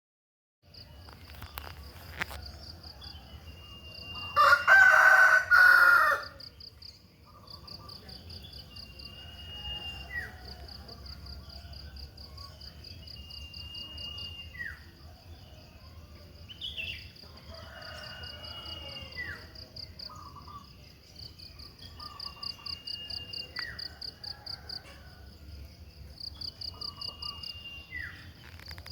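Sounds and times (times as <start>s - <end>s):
insect trill: 0.7s - 28.9s
rooster crowing: 2.9s - 6.4s, 17.4s - 19.6s, 23.6s - 25.3s
songbird whistling: 8.8s - 10.4s, 26.9s - 28.6s.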